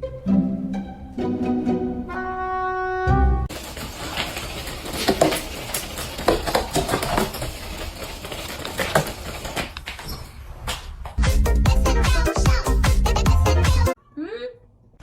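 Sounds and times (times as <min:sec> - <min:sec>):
small hard objects clattering: 0:03.5 - 0:10.0.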